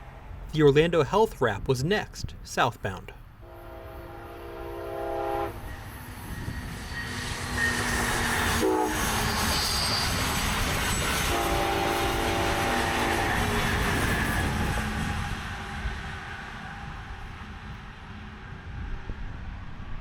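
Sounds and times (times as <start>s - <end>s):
train horn blasts: 3.4s - 5.9s, 8.6s - 9.4s, 11.2s - 13.9s.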